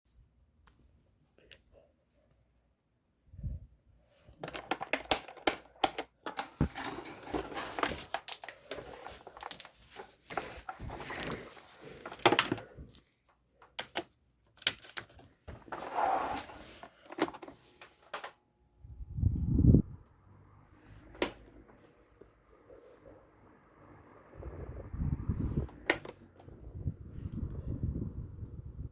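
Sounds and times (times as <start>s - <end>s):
plastic parts clicking and rattling: 4.2s - 18.4s, 25.6s - 26.5s.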